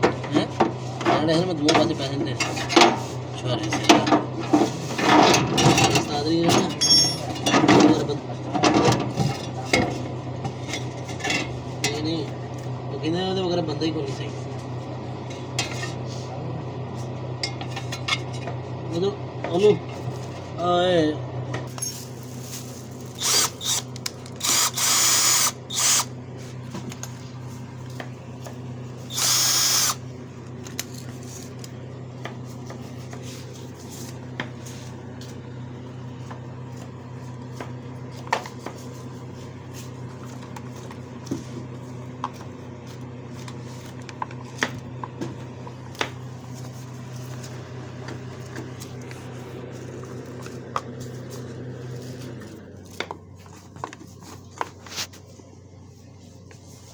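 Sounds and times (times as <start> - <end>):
small electric motor humming: 22.9 - 26.2, 29.0 - 30.1.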